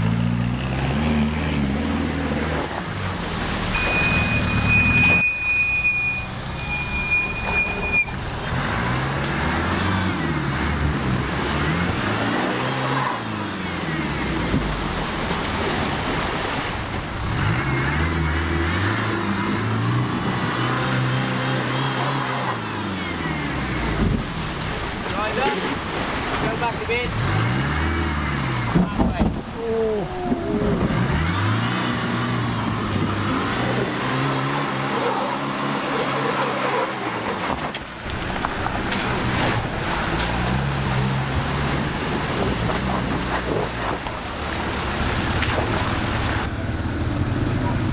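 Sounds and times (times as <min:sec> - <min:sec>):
vehicle engine revving: 0:00.0 - 0:47.9
steady high whistle: 0:03.8 - 0:08.2.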